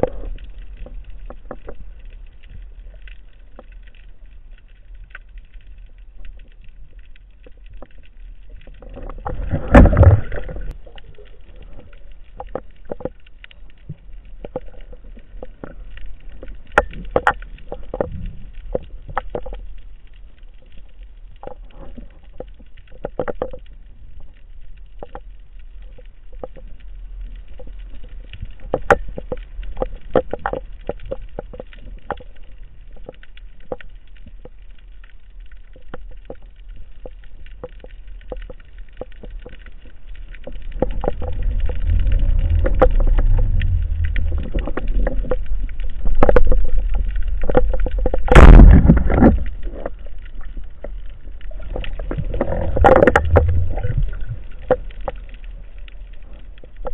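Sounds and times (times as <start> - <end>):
low underwater rumble: 0.0 - 56.9
sharp underwater clicks and knocks: 0.0 - 56.9
loud rush of sound: 41.4 - 44.7.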